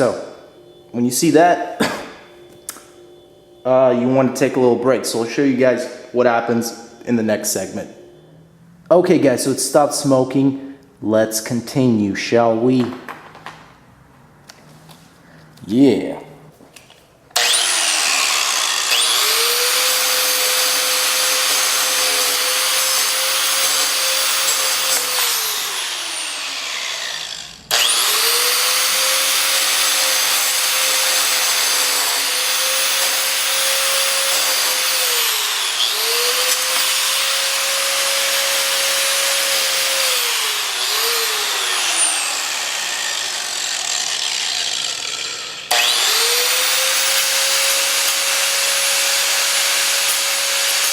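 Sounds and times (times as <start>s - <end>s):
angle grinder grinding: 17.4s - 50.9s.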